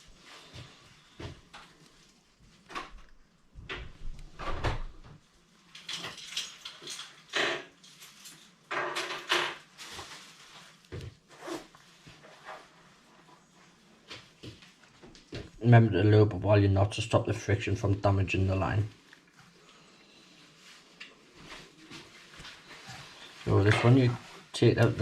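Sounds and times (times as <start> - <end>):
fishing line rustling and scraping: 5.4 - 8.7, 9.6 - 15.2, 18.7 - 25.0.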